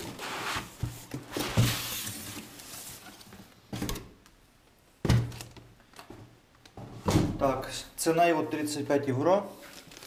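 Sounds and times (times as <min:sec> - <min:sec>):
packaging rustling and sliding: 0:00.0 - 0:03.6, 0:09.6 - 0:10.0.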